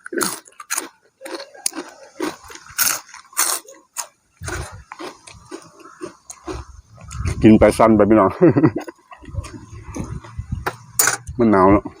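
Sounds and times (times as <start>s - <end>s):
person chewing crunchy food: 0.0s - 7.4s
wind rumble on microphone: 4.4s - 5.5s, 6.4s - 12.0s.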